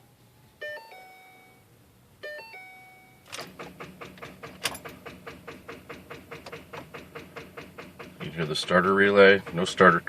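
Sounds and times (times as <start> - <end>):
starter relay clicking rapidly: 3.3 - 10.0.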